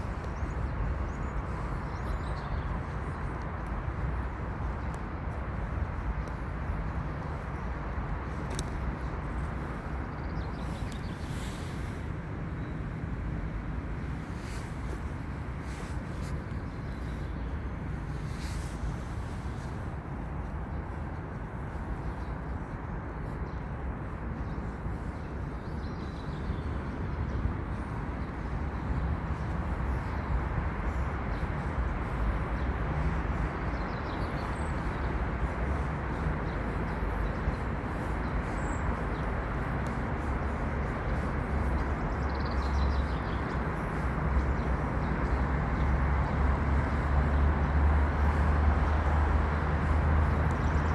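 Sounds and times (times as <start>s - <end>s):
low rumbling background noise: 0.0s - 50.9s.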